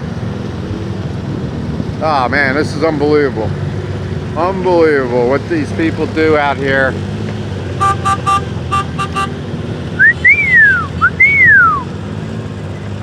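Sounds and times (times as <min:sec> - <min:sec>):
vehicle engines running: 0:00.0 - 0:13.0
horn beeping short notes: 0:07.8 - 0:09.4
whistled glides: 0:10.0 - 0:12.0.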